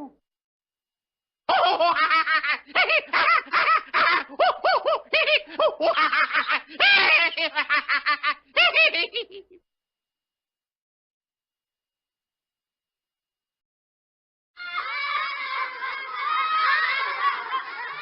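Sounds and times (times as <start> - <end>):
rapid bouncing laughter: 1.5 - 9.6, 14.9 - 18.0.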